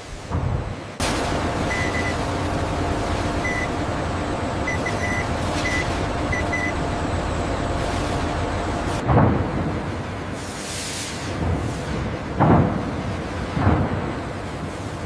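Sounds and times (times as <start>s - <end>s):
industrial machine drone: 0.4s - 10.5s
short high electronic beeps: 1.7s - 2.3s, 3.4s - 3.9s, 4.6s - 6.8s.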